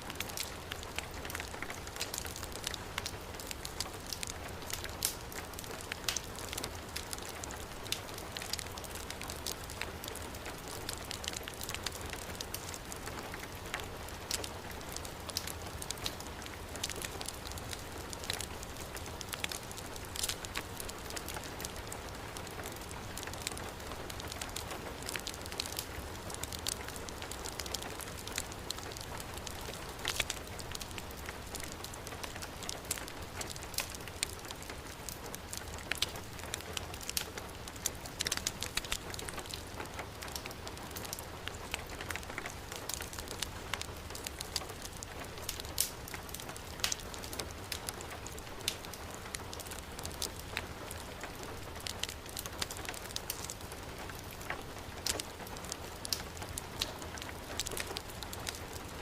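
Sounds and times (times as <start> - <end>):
heavy rain: 0.0 - 59.0
wood fire crackling: 0.0 - 59.0.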